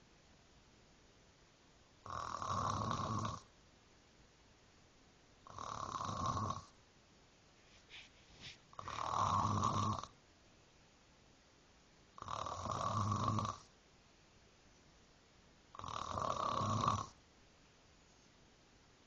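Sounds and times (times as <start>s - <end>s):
person snoring: 2.0s - 3.5s, 5.5s - 6.7s, 8.8s - 10.1s, 12.2s - 13.7s, 15.8s - 17.2s
short soft breaths: 7.6s - 8.7s.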